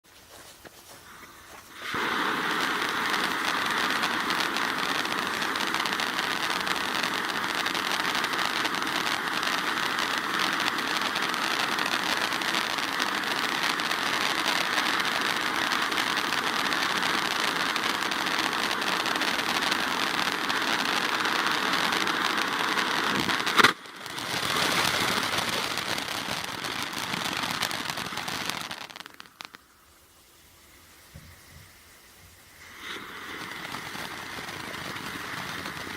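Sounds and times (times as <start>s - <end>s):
firework fountain hissing: 0.0s - 35.9s
sharp crack: 1.6s - 29.8s, 32.6s - 35.9s.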